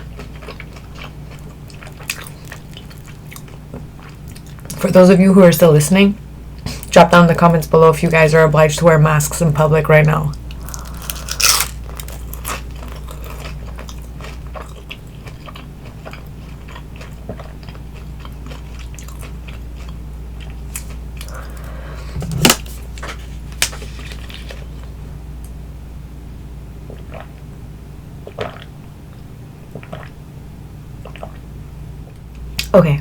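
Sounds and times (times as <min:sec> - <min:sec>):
chewing crispy food: 0:00.0 - 0:04.8, 0:10.3 - 0:21.8.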